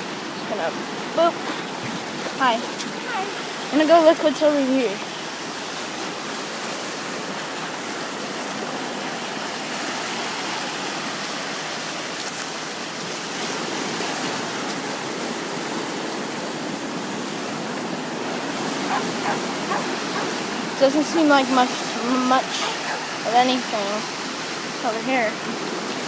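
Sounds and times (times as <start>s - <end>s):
ocean water washing over rocks: 0.0s - 26.0s.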